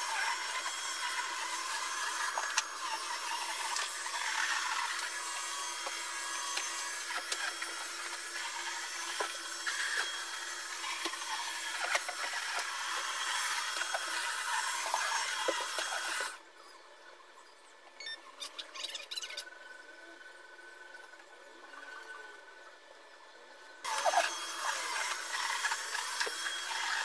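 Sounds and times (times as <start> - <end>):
vacuum cleaner running: 0.0 - 16.4, 23.9 - 27.0.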